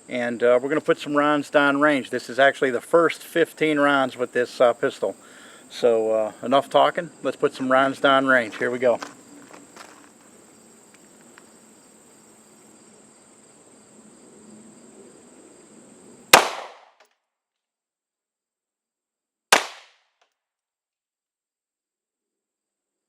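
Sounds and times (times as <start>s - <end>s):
faint steady background hiss: 0.0s - 16.4s
pistol shots: 16.4s - 16.9s, 19.5s - 19.9s.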